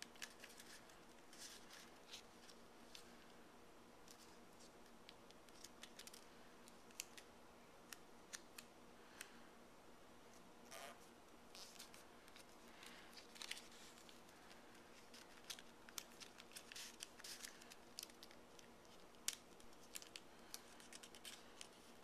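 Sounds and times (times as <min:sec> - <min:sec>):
paper rustling and creasing: 0:00.0 - 0:03.2, 0:05.5 - 0:07.2, 0:11.5 - 0:22.0.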